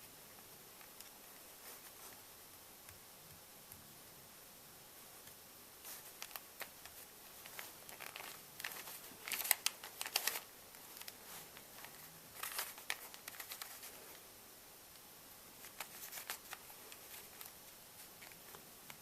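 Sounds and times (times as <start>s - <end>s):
clicks and rustling of handled objects: 5.8s - 14.2s, 15.6s - 19.0s.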